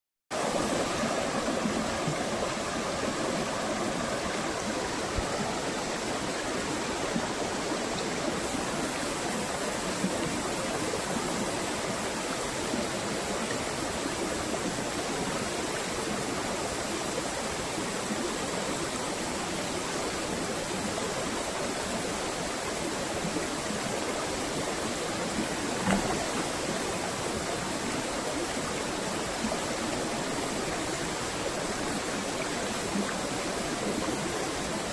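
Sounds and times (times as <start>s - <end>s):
rushing water: 0.3s - 34.9s
brief knock: 25.8s - 26.4s.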